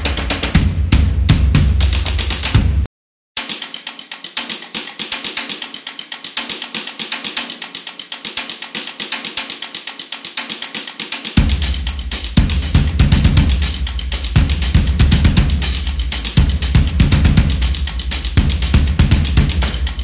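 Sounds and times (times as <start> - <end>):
heavy kick drum: 0.0 - 2.9, 11.4 - 20.0
drum-driven music: 0.0 - 20.0
ticking percussion: 3.4 - 20.0.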